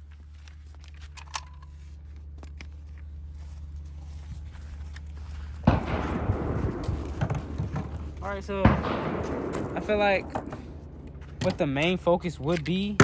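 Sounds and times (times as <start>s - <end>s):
low steady hum: 0.0s - 13.0s
loud sharp bang: 5.7s - 11.7s
handling clicks: 12.4s - 13.0s.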